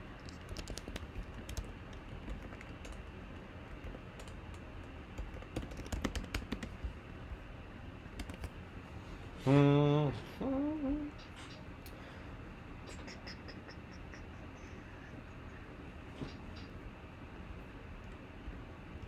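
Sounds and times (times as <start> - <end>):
keyboard keystroke clicks: 0.3 - 3.1, 3.8 - 6.9, 8.2 - 8.5.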